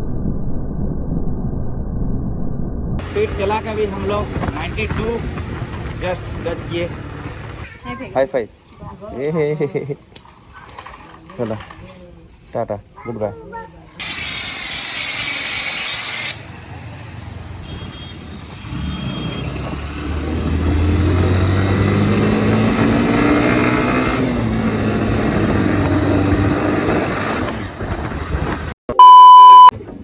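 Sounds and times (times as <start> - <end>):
vehicle engine pulling away: 3.0 - 7.7, 16.4 - 17.6, 18.2 - 28.8
wind or road noise hiss: 14.0 - 17.6.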